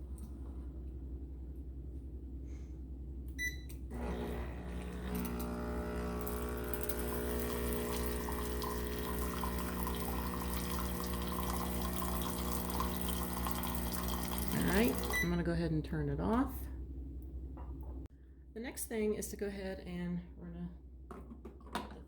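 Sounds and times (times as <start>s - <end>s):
espresso machine beep: 3.4s - 4.3s, 5.0s - 15.4s
espresso machine pump humming: 3.9s - 15.3s.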